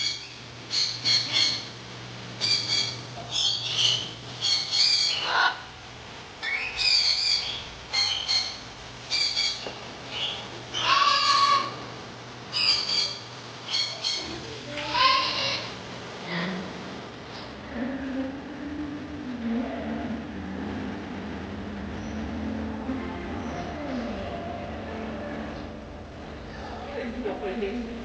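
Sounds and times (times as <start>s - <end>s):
birds squawking: 0.0s - 1.8s, 2.4s - 5.7s, 6.4s - 11.9s, 12.5s - 15.8s.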